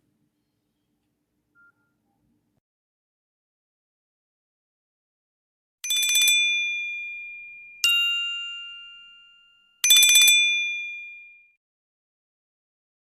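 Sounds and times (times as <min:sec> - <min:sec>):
bright bell ringtone: 0:05.8 - 0:11.6.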